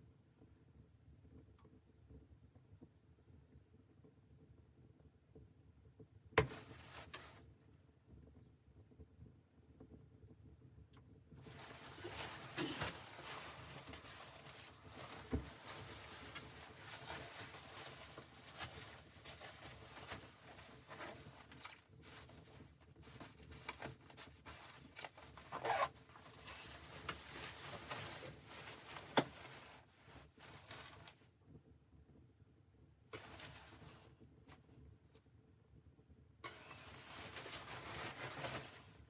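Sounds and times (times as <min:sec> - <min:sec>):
rustling and handling noise: 0:06.4 - 0:07.7, 0:11.3 - 0:31.5, 0:33.1 - 0:35.3, 0:36.4 - 0:39.0.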